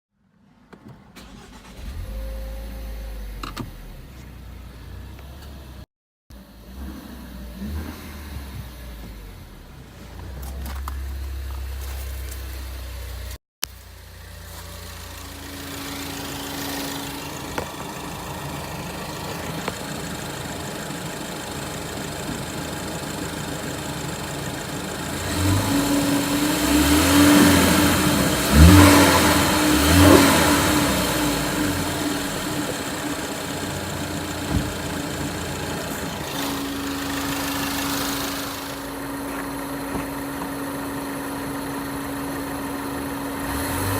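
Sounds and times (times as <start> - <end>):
car engine idling and revving: 0.7 - 43.9
high-pitched engine whine: 14.5 - 43.9.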